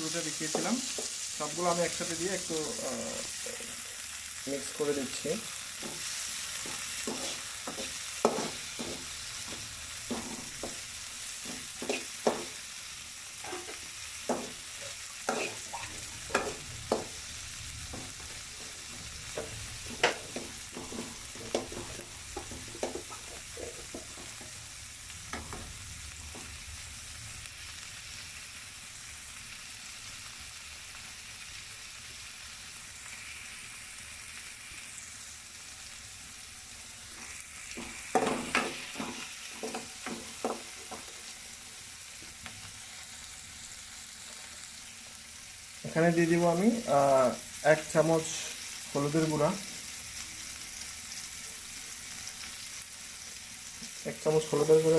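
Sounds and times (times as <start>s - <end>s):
vegetables sizzling in oil: 0.0s - 54.9s
utensil knocking and scraping pan: 5.8s - 10.8s, 11.4s - 12.6s, 13.4s - 17.2s, 17.9s - 24.5s, 37.8s - 41.2s.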